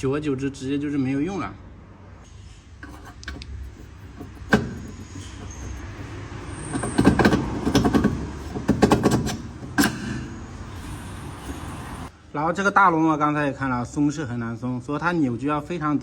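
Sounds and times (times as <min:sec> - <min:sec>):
hand tool rapid clicking: 0:02.8 - 0:11.5.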